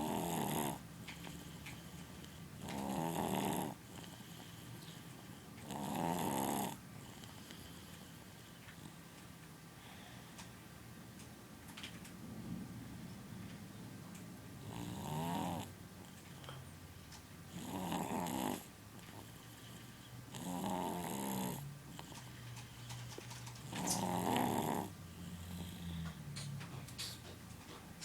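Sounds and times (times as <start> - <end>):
loud snoring: 0.0 - 0.8, 2.6 - 4.3, 5.6 - 6.8, 14.6 - 15.7, 17.5 - 18.7, 20.3 - 21.7, 23.7 - 26.1
faint low breathing: 3.8 - 5.6, 6.9 - 10.6, 24.9 - 26.3.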